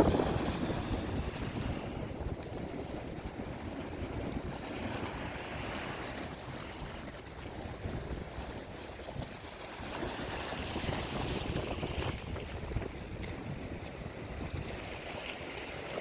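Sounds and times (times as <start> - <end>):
waves on pebble beach: 0.0 - 3.1, 4.5 - 7.0, 9.6 - 16.0
wind buffeting microphone: 0.0 - 16.0.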